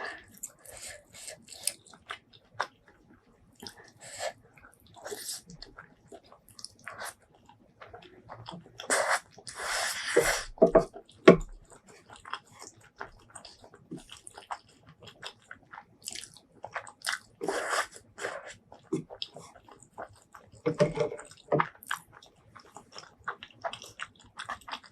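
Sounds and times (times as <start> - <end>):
crunchy bites and wet chewing: 11.0 - 20.6, 21.2 - 24.9.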